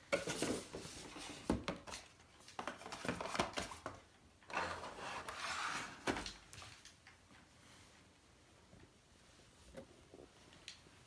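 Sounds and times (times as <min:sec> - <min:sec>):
cardboard sliding rustling scrape: 0:04.6 - 0:06.2.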